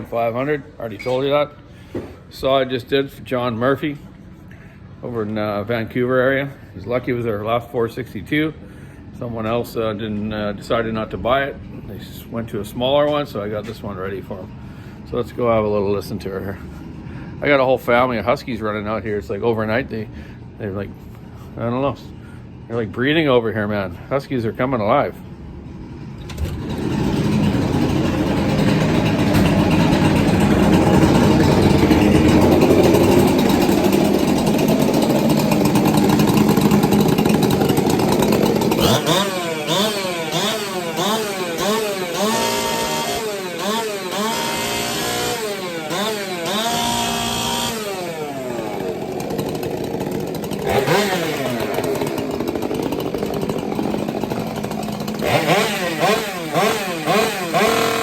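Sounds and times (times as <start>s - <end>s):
chainsaw running hard: 26.3s - 58.0s.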